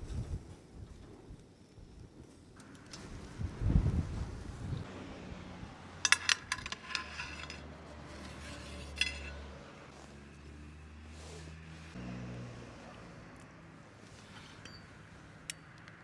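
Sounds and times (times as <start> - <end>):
tableware clinking: 6.0 - 7.6, 8.2 - 9.4.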